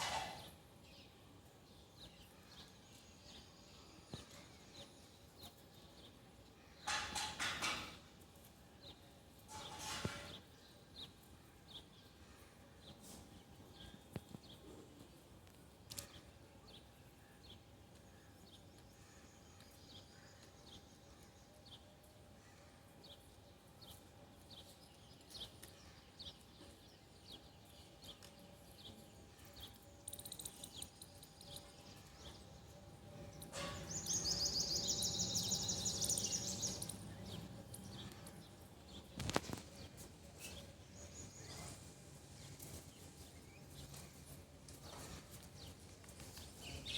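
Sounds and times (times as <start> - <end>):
birds chirping: 23.0 - 46.9
loud rapid bird trill: 33.5 - 37.5.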